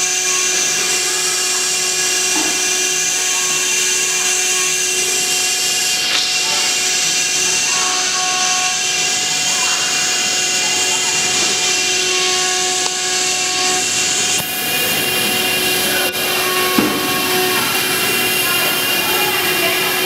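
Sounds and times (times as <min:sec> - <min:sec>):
machine noise: 0:00.0 - 0:20.0
router spindle whine: 0:00.0 - 0:20.0
bright hiss: 0:08.8 - 0:20.0.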